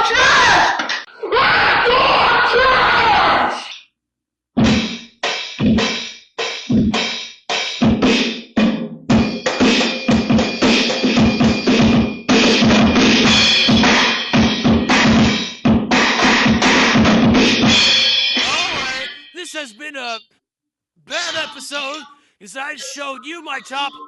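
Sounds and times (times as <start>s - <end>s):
drum kit hits: 7.8s - 18.8s.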